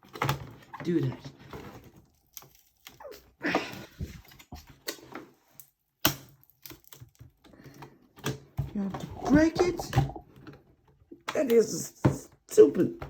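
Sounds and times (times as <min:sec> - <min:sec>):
plastic parts clicking and knocking: 0:00.0 - 0:03.0, 0:06.0 - 0:12.4
sharp plastic crack: 0:06.0 - 0:07.4.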